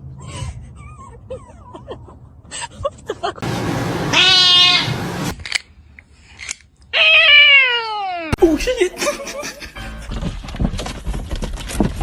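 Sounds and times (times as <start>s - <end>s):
cat hissing and yowling: 4.1s - 4.9s.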